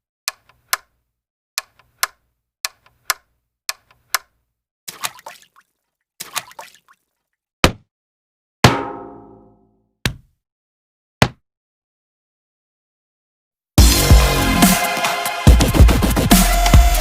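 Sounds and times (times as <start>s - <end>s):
hard hit: 8.7s - 9.5s.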